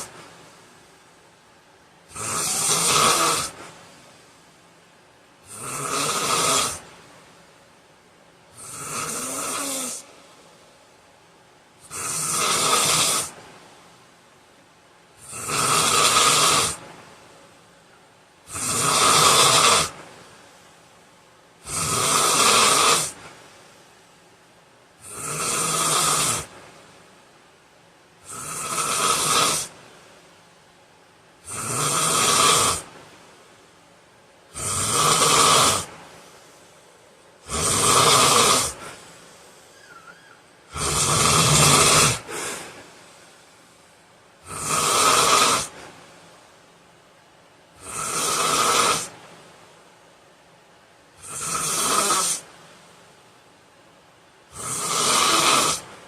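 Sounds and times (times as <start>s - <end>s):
man snoring loudly: 2.1s - 3.6s, 5.4s - 6.8s, 8.6s - 10.1s, 11.8s - 13.4s, 15.2s - 16.8s, 18.5s - 20.0s, 21.6s - 23.2s, 25.0s - 26.5s, 28.2s - 29.7s, 31.4s - 32.9s, 34.5s - 35.9s, 37.4s - 39.0s, 39.9s - 42.6s, 44.4s - 45.8s, 47.8s - 49.2s, 51.2s - 52.4s, 54.5s - 55.9s.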